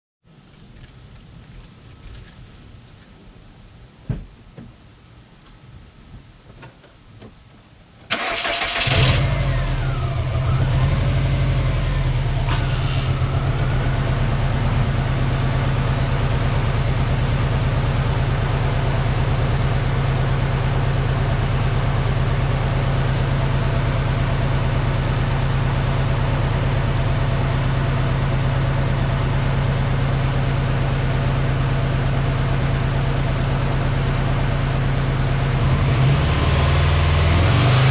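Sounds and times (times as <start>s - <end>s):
starter cranking engine: 8.1s - 9.5s, 12.5s - 13.4s
car engine idling: 8.2s - 37.9s.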